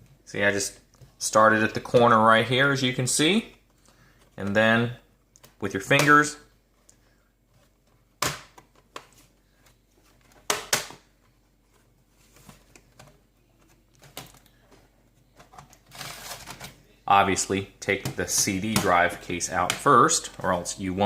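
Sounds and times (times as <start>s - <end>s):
plastic scrape: 15.5s - 16.7s.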